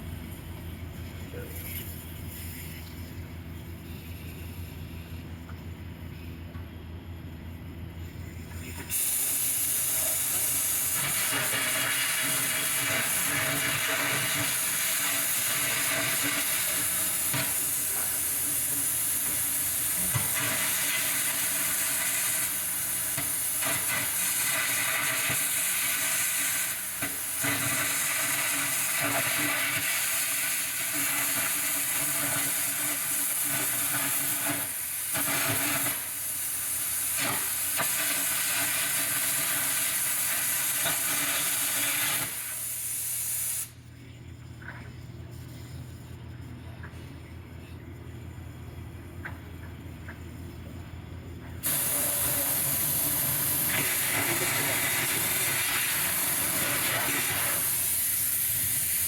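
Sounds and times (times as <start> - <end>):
sizzling hiss of steel cutting: 8.6 - 43.8, 51.6 - 59.0.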